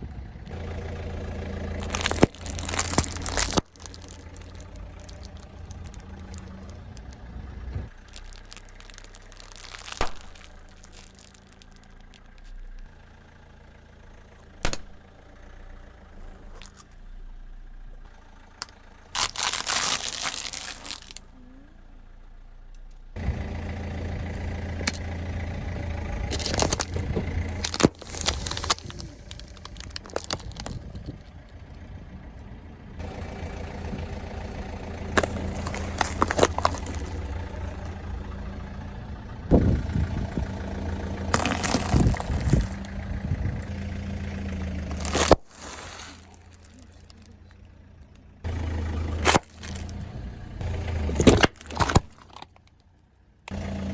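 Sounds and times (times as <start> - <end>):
car engine running: 0.0 - 53.9
objects cracking and crunching: 1.7 - 7.2, 7.9 - 12.5, 19.2 - 21.3, 24.8 - 25.1, 26.2 - 31.5, 35.0 - 38.5, 39.5 - 43.9, 44.6 - 47.6, 48.5 - 53.6.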